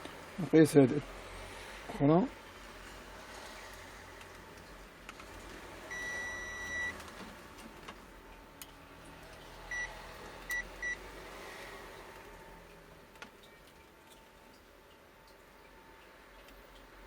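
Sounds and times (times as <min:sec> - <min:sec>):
multimeter beeping: 0:05.9 - 0:06.9.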